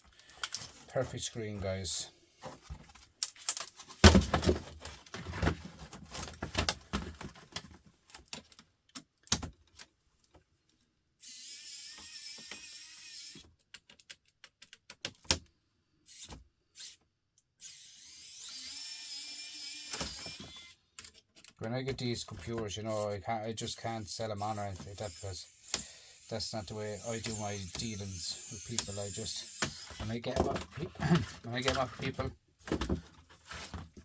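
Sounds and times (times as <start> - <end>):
small electric tool motor: 11.2 - 13.5, 16.1 - 17.0, 17.6 - 20.8, 23.7 - 30.1.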